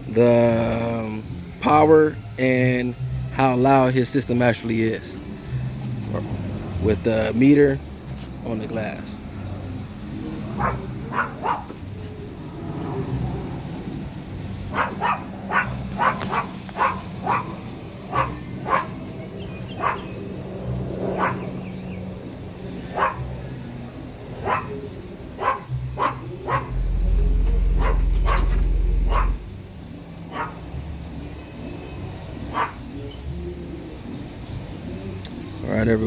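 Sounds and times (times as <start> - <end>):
dog barking: 10.6 - 11.7, 14.7 - 19.0, 19.7 - 20.2, 21.1 - 21.5, 22.9 - 23.3, 24.4 - 24.8, 25.4 - 26.8, 27.8 - 28.5, 29.1 - 29.4, 30.3 - 30.6, 32.5 - 32.9
deep bass tone from subwoofers: 25.7 - 29.9.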